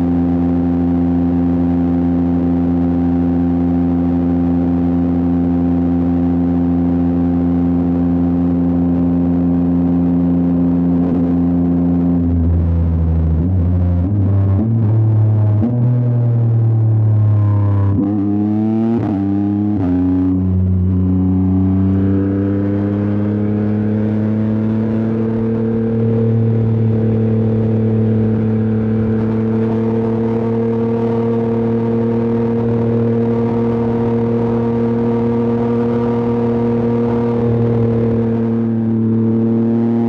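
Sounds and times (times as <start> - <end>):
motorcycle engine shifting gears: 10.8 - 40.0.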